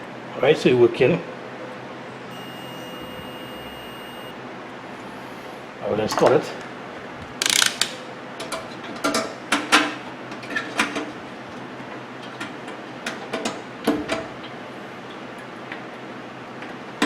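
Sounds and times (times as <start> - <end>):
small parts clicking and knocking: 7.4 - 8.0.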